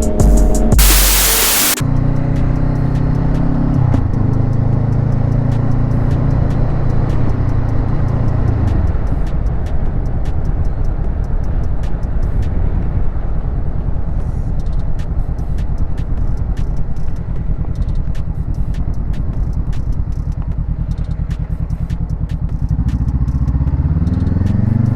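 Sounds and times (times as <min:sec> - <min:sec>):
engine ticks: 0:00.1 - 0:24.9
motorcycle engine rumbling: 0:05.8 - 0:24.4.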